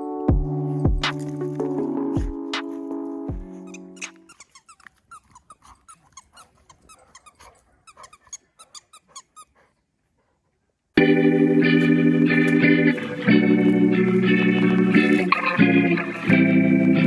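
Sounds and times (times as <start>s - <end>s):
music: 0.0s - 4.2s, 11.0s - 17.0s.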